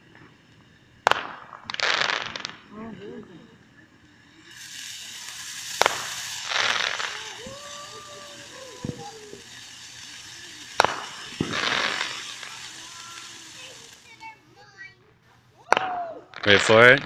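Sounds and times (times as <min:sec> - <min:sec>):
fireworks bangs: 0:00.0 - 0:14.4, 0:15.6 - 0:17.0
fireworks crackling: 0:00.0 - 0:17.0.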